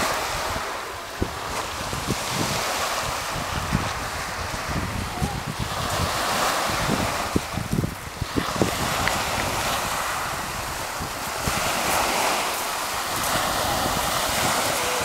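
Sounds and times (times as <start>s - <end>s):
sea waves washing onto beach: 0.0s - 15.0s
wind buffeting microphone: 0.0s - 15.0s.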